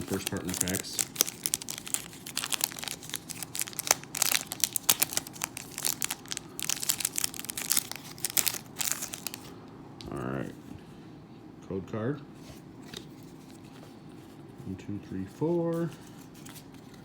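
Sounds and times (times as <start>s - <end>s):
foil wrapper crinkling and tearing: 0.0s - 9.5s.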